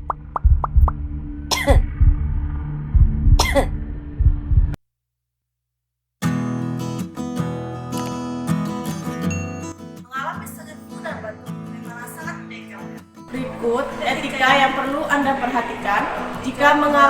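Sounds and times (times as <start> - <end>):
person coughing: 1.5 - 1.8, 3.4 - 3.8
guitar music: 6.2 - 17.0.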